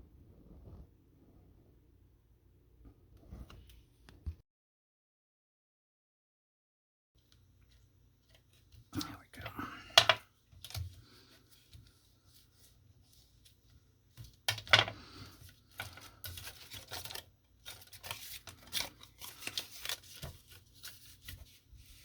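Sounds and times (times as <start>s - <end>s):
paper rustling: 14.2s - 22.0s.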